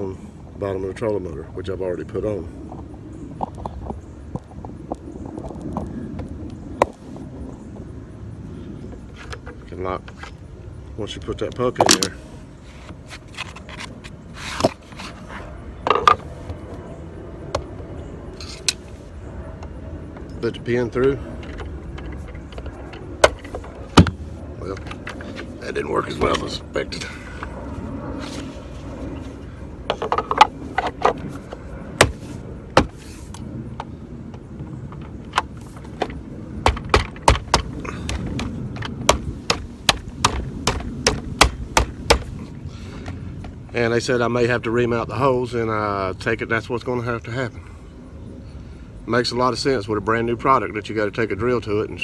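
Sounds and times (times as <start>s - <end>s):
bracket parts clicking and knocking: 21.4s - 26.6s, 29.2s - 33.4s, 34.9s - 42.4s.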